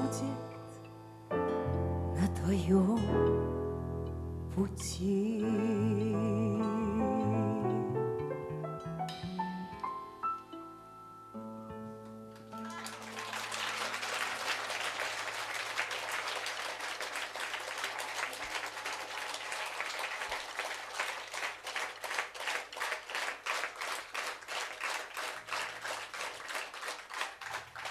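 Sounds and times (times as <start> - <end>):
rhythmic unison clapping: 12.0 - 27.9
audience applauding: 12.3 - 27.9.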